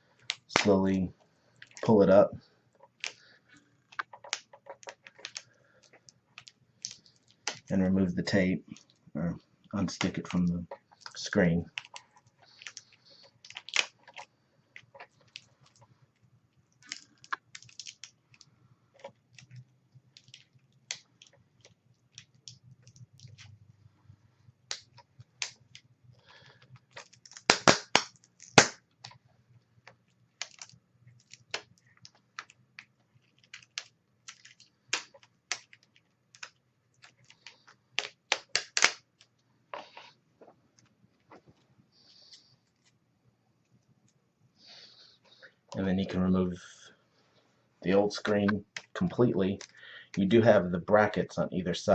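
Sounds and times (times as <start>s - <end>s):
clicks of plastic laptop parts: 29.8s - 39.3s.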